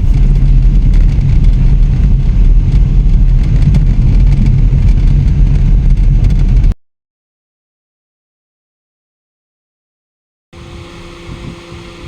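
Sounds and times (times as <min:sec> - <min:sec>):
car engine and road noise: 0:00.0 - 0:06.8, 0:10.6 - 0:12.0.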